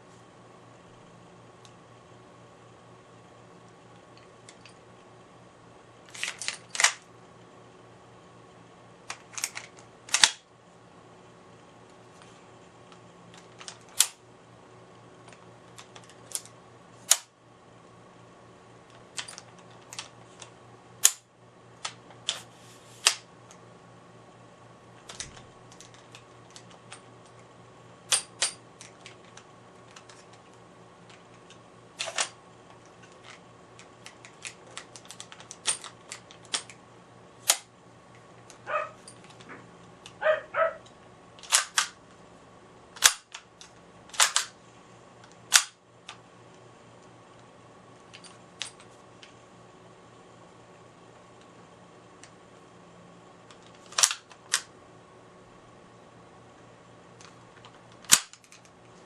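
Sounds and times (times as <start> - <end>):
airsoft gun clicks and clacks: 6.1 - 7.0, 9.1 - 10.4, 13.3 - 14.2, 15.3 - 17.3, 19.2 - 21.2, 31.1 - 36.8, 37.4 - 37.7, 41.4 - 42.0, 43.0 - 44.6, 45.2 - 46.2, 53.5 - 54.7, 57.2 - 58.7.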